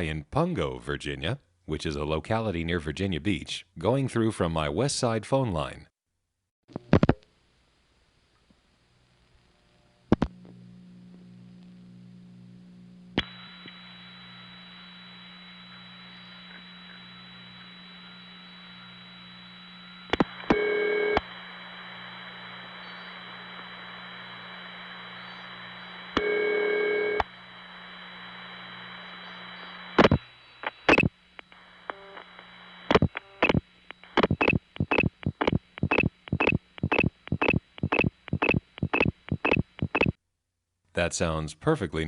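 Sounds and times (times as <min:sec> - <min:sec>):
telephone line hiss and hum: 0:06.7 - 0:40.2
telephone ringing tone: 0:19.9 - 0:21.2, 0:26.1 - 0:27.2
fast even pulses: 0:32.9 - 0:40.2.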